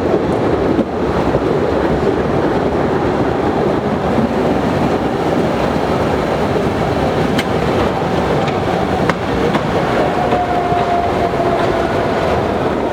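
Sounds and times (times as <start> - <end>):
electric train rumbling on rails: 0.0 - 12.9.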